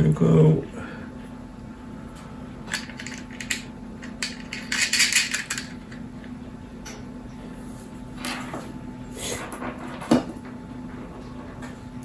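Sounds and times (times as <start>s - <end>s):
steady low hum: 0.0s - 12.0s
small metal parts clinking: 2.7s - 5.9s.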